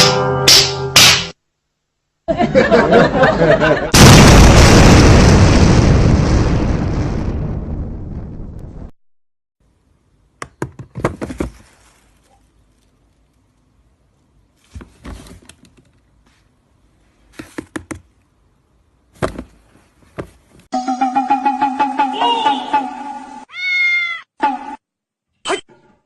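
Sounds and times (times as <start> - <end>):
sharp knocks and taps: 10.4 - 11.2.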